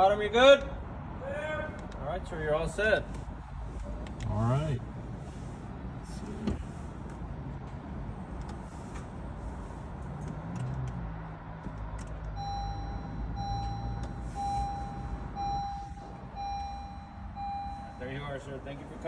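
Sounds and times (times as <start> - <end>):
car engine idling: 11.7 - 19.0
repeating electronic beep: 12.4 - 18.2.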